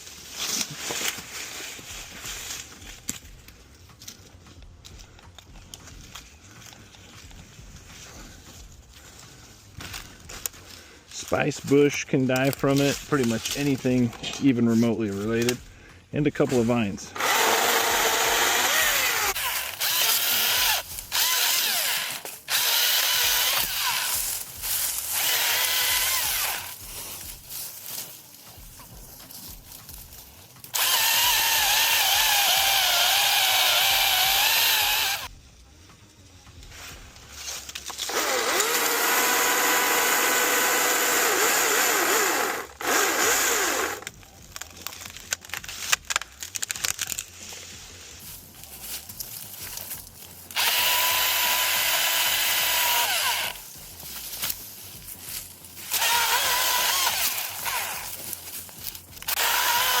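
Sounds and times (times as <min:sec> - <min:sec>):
chainsaw cutting wood: 0:17.1 - 0:35.3, 0:37.8 - 0:44.2, 0:48.3 - 1:00.0.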